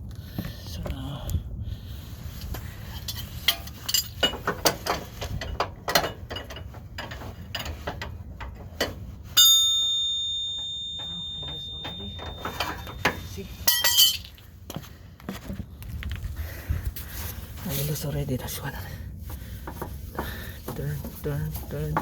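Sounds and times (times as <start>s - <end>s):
metal clicks and knocks: 3.1s - 9.0s, 10.5s - 14.4s
ringing metal clang: 9.4s - 14.3s.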